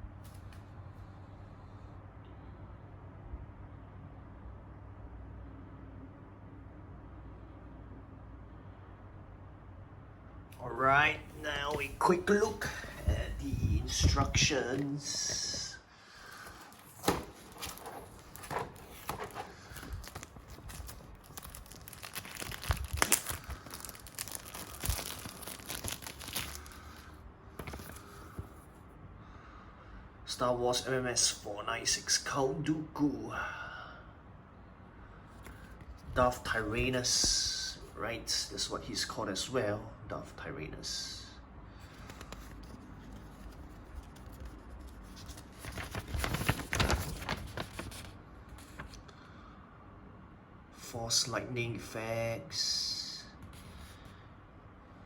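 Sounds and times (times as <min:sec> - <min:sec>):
paper rustling and crinkling: 0:11.3 - 0:28.7, 0:41.8 - 0:49.0.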